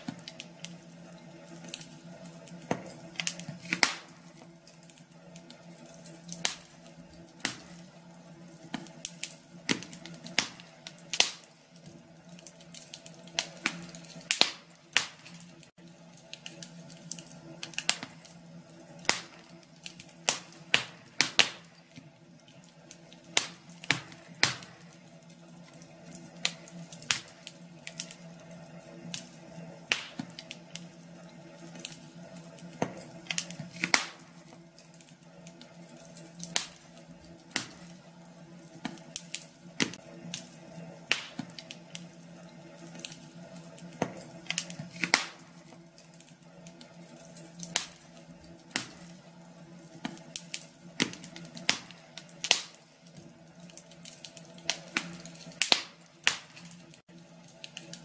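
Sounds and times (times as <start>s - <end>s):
wood fire crackling and popping: 0.0s - 58.0s.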